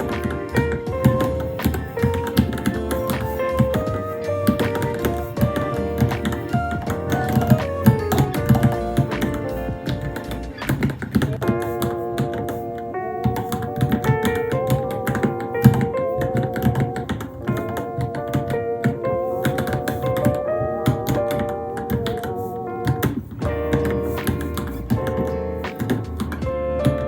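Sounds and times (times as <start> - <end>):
background music: 0.0 - 27.0.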